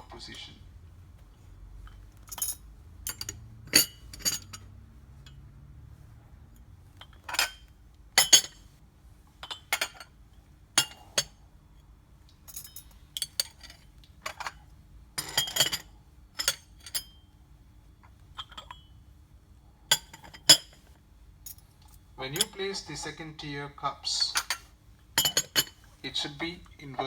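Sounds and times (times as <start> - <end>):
china teacups clinking: 25.2 - 25.8.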